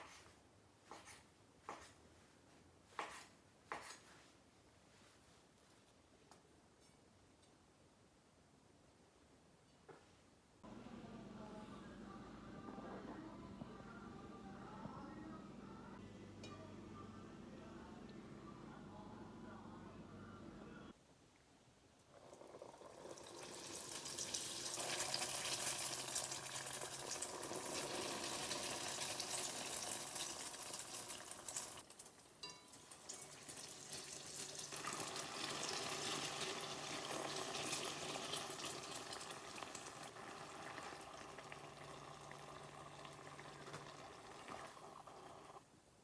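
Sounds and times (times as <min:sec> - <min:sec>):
dough sizzling in hot oil: 0:22.1 - 0:45.6.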